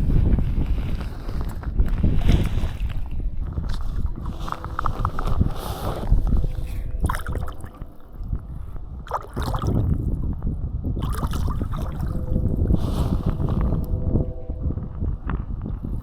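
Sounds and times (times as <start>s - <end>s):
wind rumbling on microphone: 0.0s - 16.0s.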